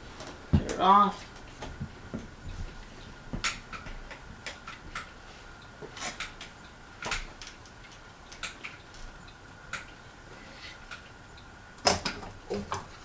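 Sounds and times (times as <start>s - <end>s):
ceiling fan clicking: 0.0s - 13.0s.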